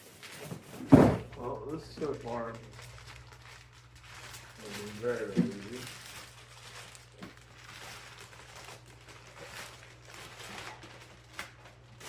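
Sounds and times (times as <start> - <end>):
rustling of packaging: 0.0 - 12.0
steady low hum: 0.2 - 12.0.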